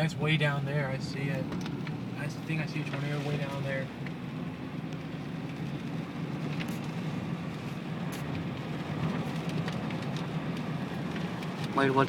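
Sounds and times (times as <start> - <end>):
car driving low rumble: 0.0 - 12.0.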